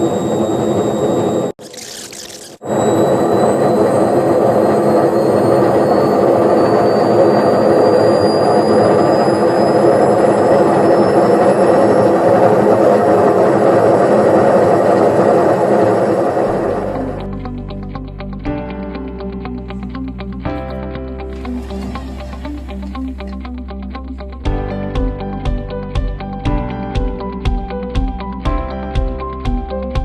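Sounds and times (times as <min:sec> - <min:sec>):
faint high whine: 0:00.0 - 0:17.4, 0:21.3 - 0:23.6.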